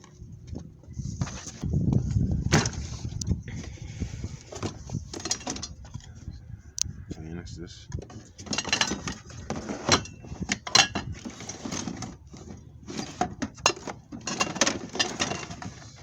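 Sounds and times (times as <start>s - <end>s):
objects clattering in box: 8.0s - 16.0s.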